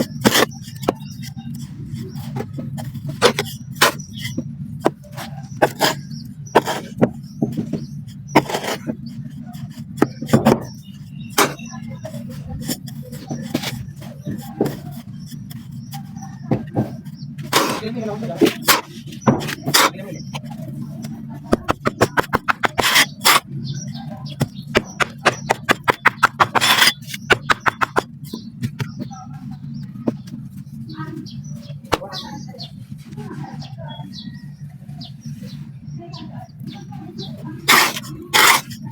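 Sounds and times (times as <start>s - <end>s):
sand being crushed: 0.0s - 10.5s, 11.3s - 11.7s, 17.0s - 20.7s, 21.7s - 28.4s, 37.7s - 38.9s.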